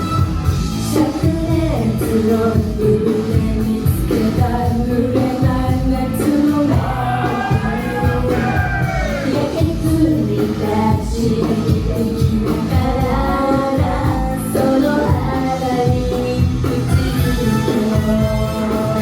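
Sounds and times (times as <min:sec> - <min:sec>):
pop-rock backing track: 0:00.0 - 0:19.0
group singing live: 0:05.1 - 0:14.8.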